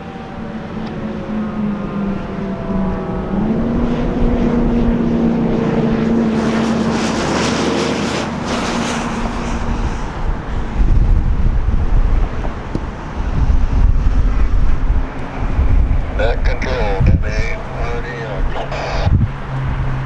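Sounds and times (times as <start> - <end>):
outdoor warning siren wail: 0.0 - 10.1
passing vehicle rush: 0.0 - 20.0
wind buffeting microphone: 0.0 - 20.0.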